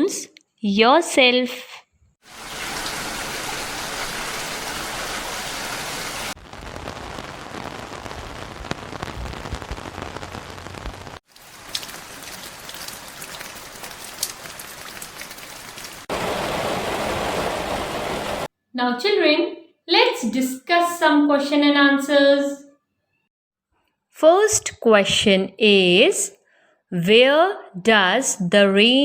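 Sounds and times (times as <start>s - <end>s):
rain hissing: 2.2s - 18.5s
soft rain patter: 2.2s - 18.5s
raindrops ticking: 11.3s - 18.5s.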